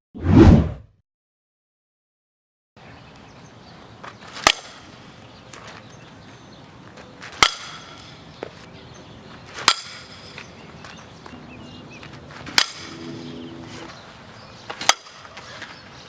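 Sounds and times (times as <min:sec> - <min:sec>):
bat hitting balls: 0:04.3 - 0:05.0, 0:07.4 - 0:08.2, 0:09.5 - 0:10.5, 0:12.0 - 0:13.9, 0:14.8 - 0:15.4.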